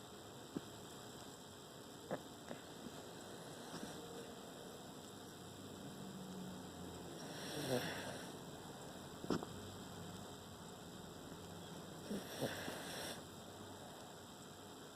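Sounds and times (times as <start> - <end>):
steady electrical hum: 0.0 - 14.9
pet snoring: 2.1 - 4.2, 7.1 - 8.4, 12.0 - 13.2.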